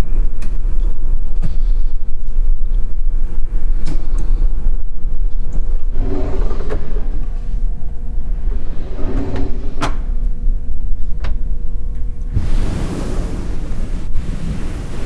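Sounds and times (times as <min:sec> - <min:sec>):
steady low rumble: 0:00.0 - 0:15.0
cabinet parts sliding: 0:12.3 - 0:15.0.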